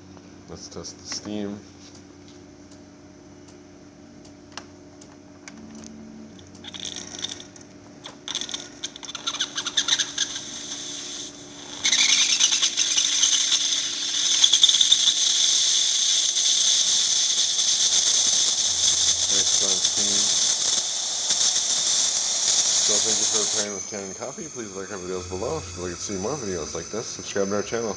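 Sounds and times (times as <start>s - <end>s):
steam wand spitting and crackling: 8.1s - 27.9s
loud steady steam hiss: 9.3s - 27.9s.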